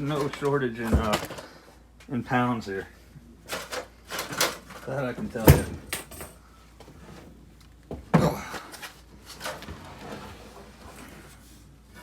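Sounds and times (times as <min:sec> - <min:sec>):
metal air conditioner knocks and clunks: 0:05.2 - 0:06.3.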